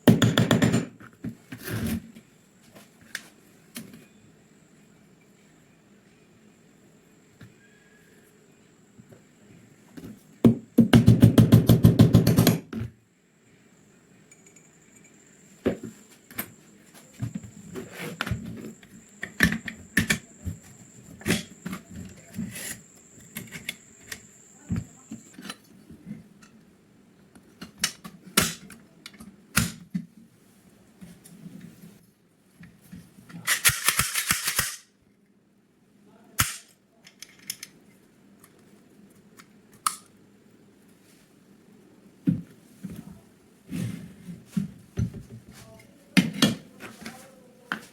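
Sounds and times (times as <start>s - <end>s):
knocks on metal parts: 0.0s - 1.0s, 10.4s - 12.8s.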